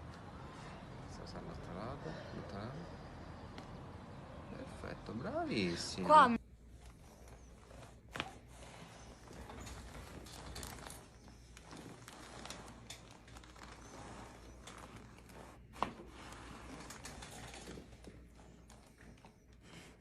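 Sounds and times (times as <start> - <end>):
rustling on treatment table: 6.6 - 20.0.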